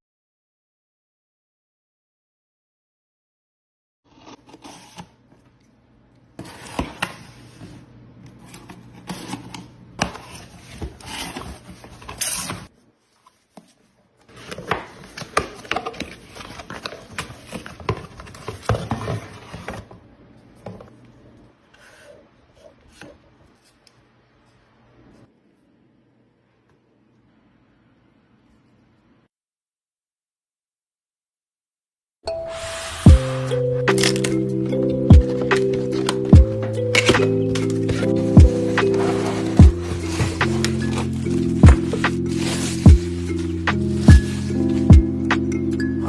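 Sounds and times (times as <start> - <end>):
packaging rustling and scraping: 6.4 - 21.0, 33.6 - 46.0.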